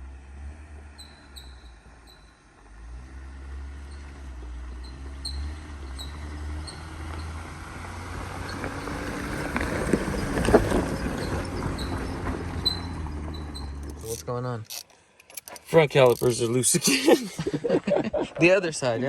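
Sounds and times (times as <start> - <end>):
low vehicle rumble: 0.0 - 18.3
faint high squeak: 11.0 - 16.3.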